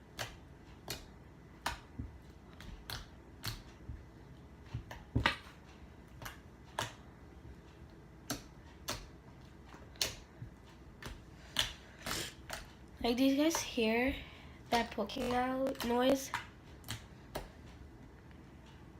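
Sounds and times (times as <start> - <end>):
fingers poking wet slime: 0.0 - 3.9, 6.1 - 7.0, 8.2 - 12.7, 15.1 - 17.5.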